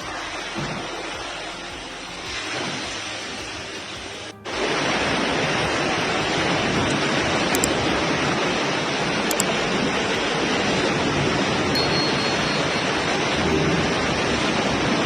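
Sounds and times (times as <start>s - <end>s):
water rushing: 0.0s - 15.0s.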